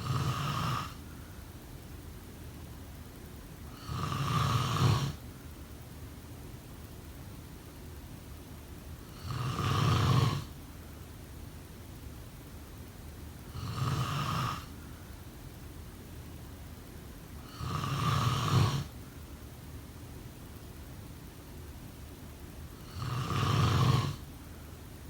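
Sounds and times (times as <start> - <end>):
person snoring: 0.0 - 1.0, 3.7 - 5.2, 9.1 - 10.5, 17.5 - 18.9, 22.8 - 24.2.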